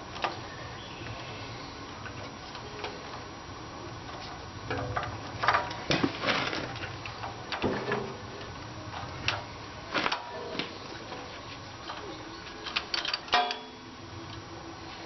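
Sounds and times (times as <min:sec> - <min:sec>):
tools clicking and clanking: 0:11.9 - 0:13.8
short metallic rings: 0:13.3 - 0:13.9.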